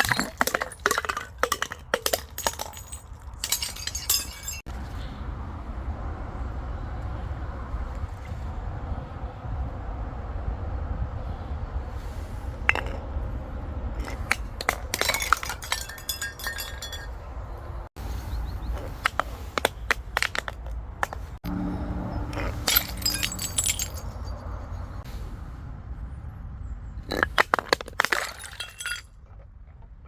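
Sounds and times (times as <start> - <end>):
glass bottles cracking and crunching: 0.0 - 4.7, 14.0 - 17.2, 22.4 - 24.3, 27.1 - 29.1.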